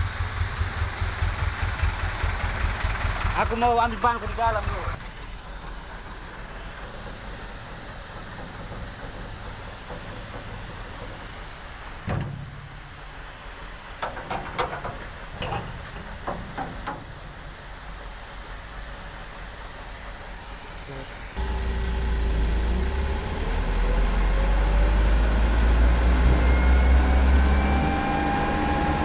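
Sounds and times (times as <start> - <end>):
vehicle engine idling: 0.0 - 5.0, 21.4 - 29.0
thump: 12.1 - 12.6.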